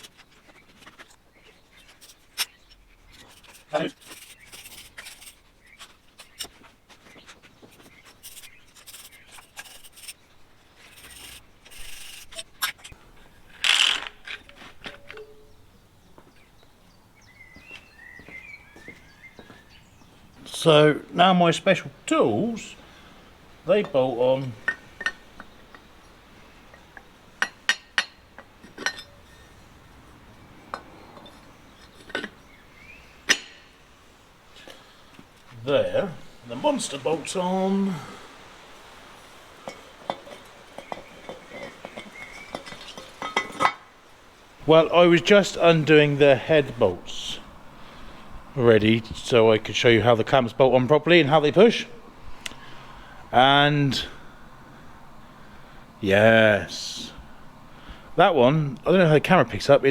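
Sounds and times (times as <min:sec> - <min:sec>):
metal tool parts clinking: 0:13.5 - 0:15.5, 0:27.4 - 0:29.4
tools clinking on metal: 0:23.8 - 0:25.9, 0:26.7 - 0:29.5, 0:30.7 - 0:32.4, 0:39.6 - 0:43.8.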